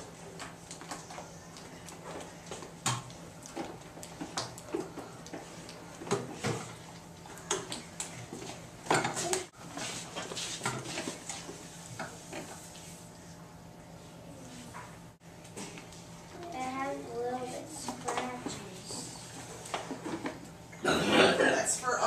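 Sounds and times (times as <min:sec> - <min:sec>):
children's voices: 0:16.3 - 0:19.3.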